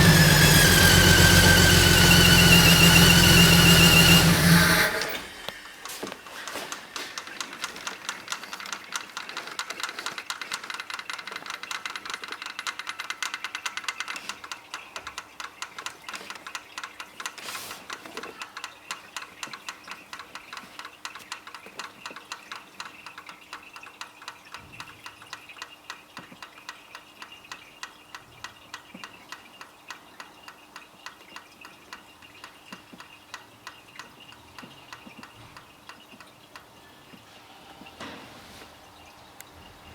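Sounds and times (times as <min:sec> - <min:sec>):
engine valve ticking: 0:00.0 - 0:05.9.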